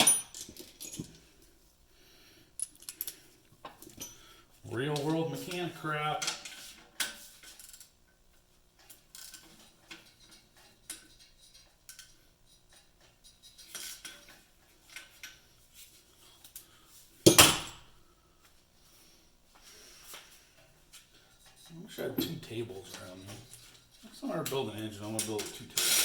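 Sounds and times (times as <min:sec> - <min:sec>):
light metal clinks and clicks: 0:02.6 - 0:04.3.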